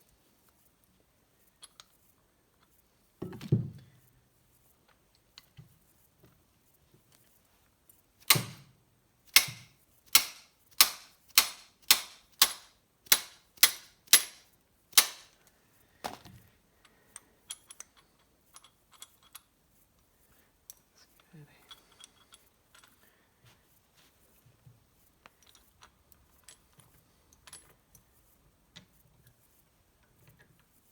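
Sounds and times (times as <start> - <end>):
hammer tapping on metal: 9.4 - 14.4, 15.0 - 15.3.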